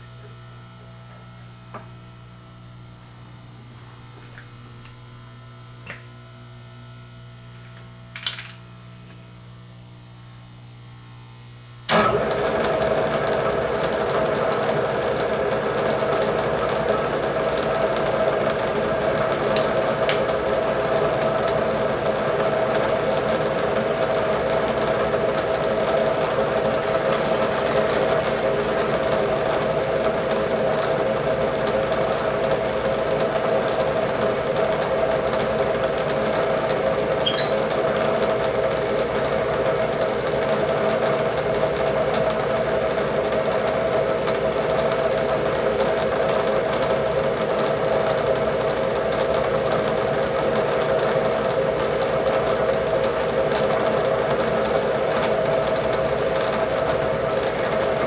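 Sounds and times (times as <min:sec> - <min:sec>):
low electrical hum: 0:00.0 - 0:12.0
spindle motor running with whine: 0:00.0 - 0:58.0.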